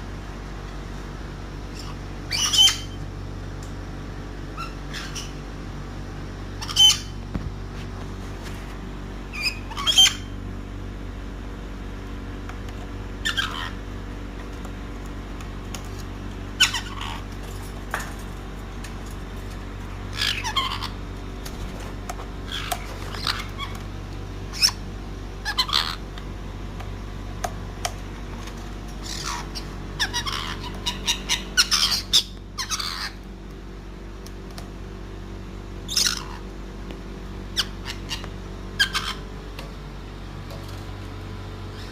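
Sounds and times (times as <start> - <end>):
parrot squawking: 1.7 - 3.0, 4.6 - 5.4, 6.6 - 7.2, 9.3 - 10.4, 13.2 - 13.8, 16.6 - 17.3, 20.1 - 21.0, 22.5 - 23.8, 24.5 - 24.8, 25.4 - 26.1, 29.0 - 33.2, 35.9 - 36.5, 37.5 - 39.3.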